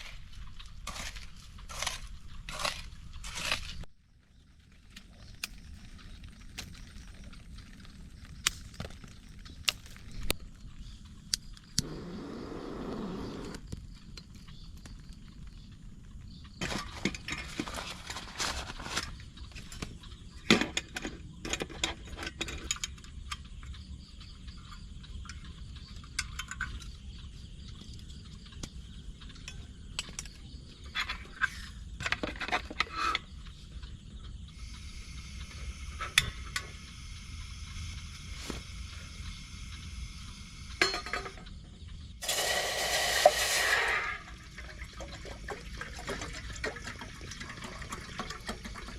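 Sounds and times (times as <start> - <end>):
cookware and utensils clinking: 40.8 - 41.4.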